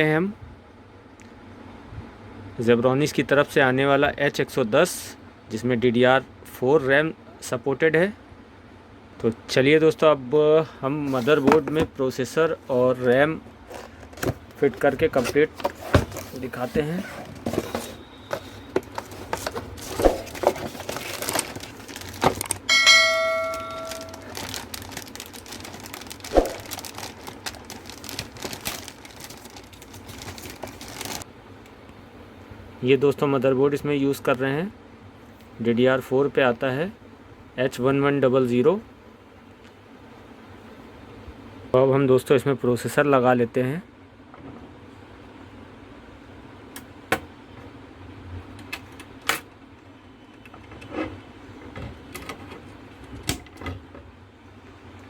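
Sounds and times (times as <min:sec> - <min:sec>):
packaging crinkling and rustling: 0:11.0 - 0:11.9, 0:12.7 - 0:31.2.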